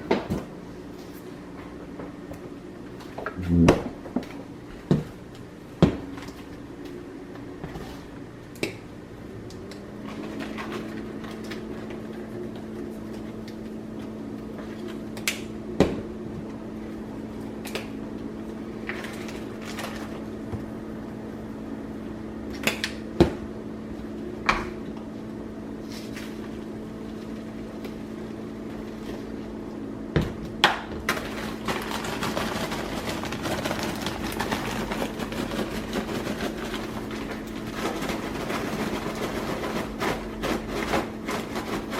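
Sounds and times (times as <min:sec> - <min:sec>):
microwave oven humming: 0:00.0 - 0:41.9
popcorn popping: 0:08.5 - 0:16.6, 0:22.5 - 0:23.5, 0:30.1 - 0:41.9.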